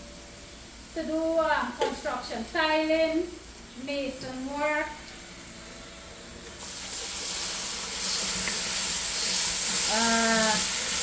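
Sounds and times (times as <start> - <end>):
seasoning sizzling in hot oil: 6.6 - 11.0.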